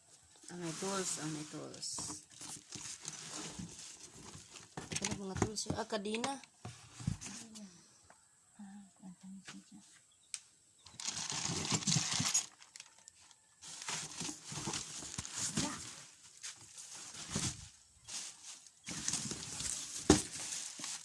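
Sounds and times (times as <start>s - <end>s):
packaging rustling: 11.0s - 13.0s, 13.6s - 21.0s.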